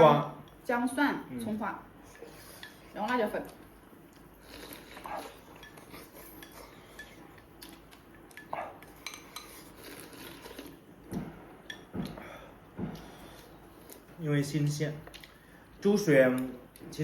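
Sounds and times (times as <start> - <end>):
utensils clinking against dishes: 5.0 - 10.5.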